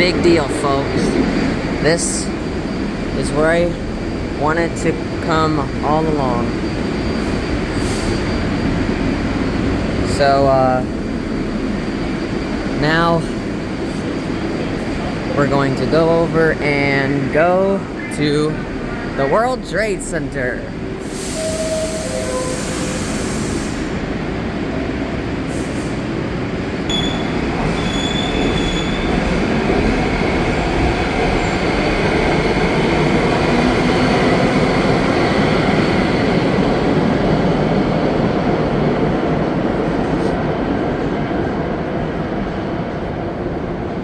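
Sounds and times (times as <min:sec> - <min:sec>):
subway wheels on track: 0:00.0 - 0:44.0
high-pitched wheel squeals: 0:21.3 - 0:23.1, 0:26.9 - 0:29.2.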